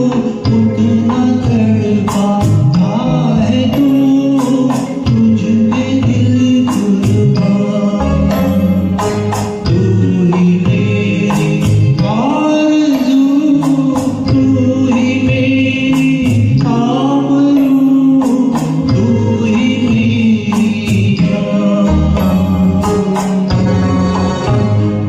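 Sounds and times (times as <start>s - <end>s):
man singing: 0.0s - 24.0s
instrumental accompaniment: 0.0s - 25.0s
steady percussion beat: 0.0s - 25.0s.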